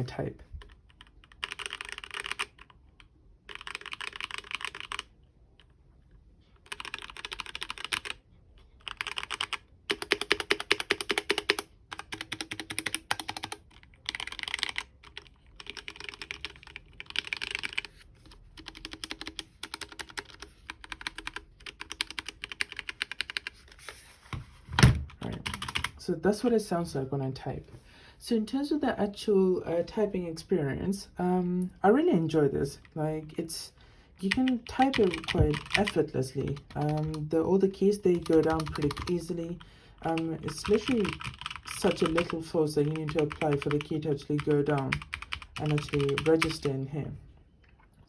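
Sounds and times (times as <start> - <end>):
mechanical keyboard typing: 0.6 - 5.1, 6.6 - 8.2, 8.8 - 23.7, 25.1 - 26.0, 34.2 - 37.3, 37.9 - 39.3, 40.1 - 46.8.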